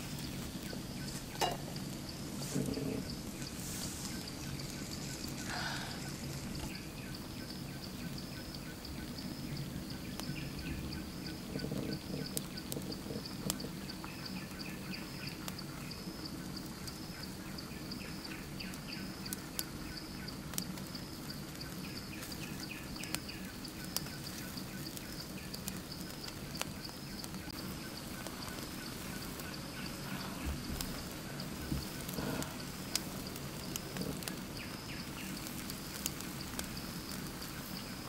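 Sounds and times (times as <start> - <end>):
birds chirping and trilling: 0.0 - 20.6, 21.4 - 38.0
insects pulsing call: 0.0 - 38.0
sharp clicks and pops: 11.2 - 14.6, 30.4 - 37.9.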